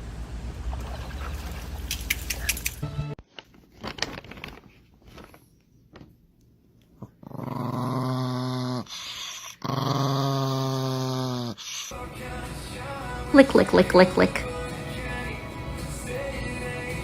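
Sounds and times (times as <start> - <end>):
dog growling: 7.0 - 12.0.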